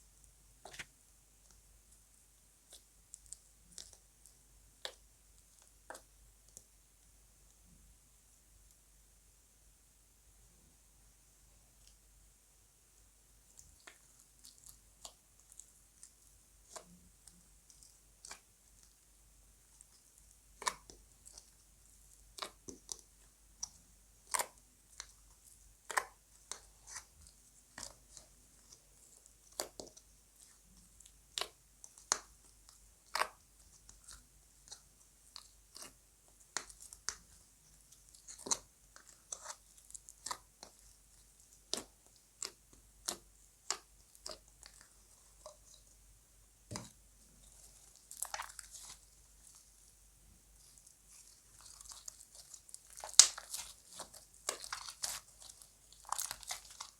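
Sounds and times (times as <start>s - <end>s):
slime popping and crackling: 22.2s - 45.8s, 46.7s - 56.9s.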